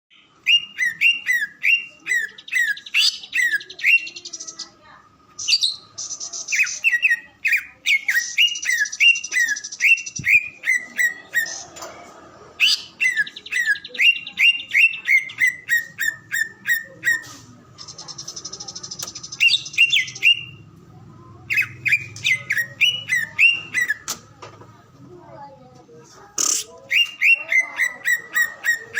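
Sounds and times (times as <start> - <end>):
bird buzzy chattering trills: 5.4 - 11.8, 12.5 - 20.7, 21.4 - 24.2, 26.3 - 28.9
bird whistled notes: 21.5 - 24.0.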